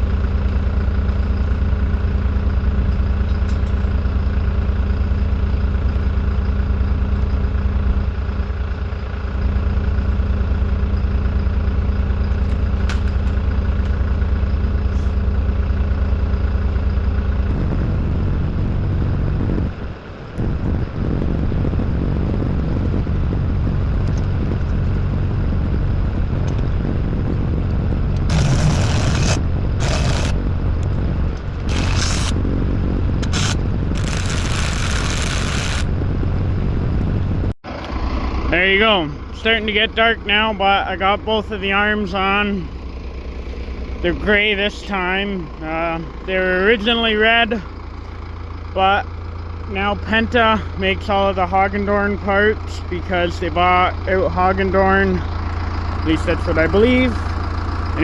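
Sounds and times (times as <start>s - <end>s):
engine idling: 0.0s - 58.0s.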